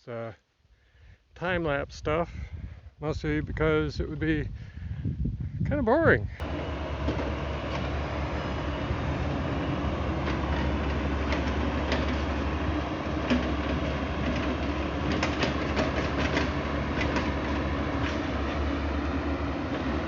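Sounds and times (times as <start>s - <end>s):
large engine rumbling: 5.5s - 20.0s
metallic clanks and knocks: 10.2s - 12.4s, 13.2s - 18.3s.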